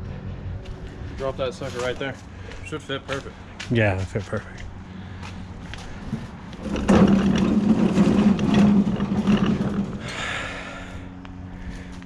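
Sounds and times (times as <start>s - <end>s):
metal rattling and scraping: 5.8s - 10.4s.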